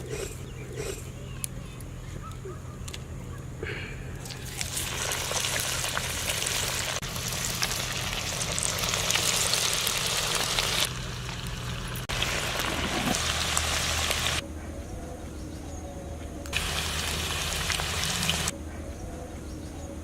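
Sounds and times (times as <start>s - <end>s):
chicken deep-frying in hot oil: 4.2s - 14.4s, 16.5s - 18.5s.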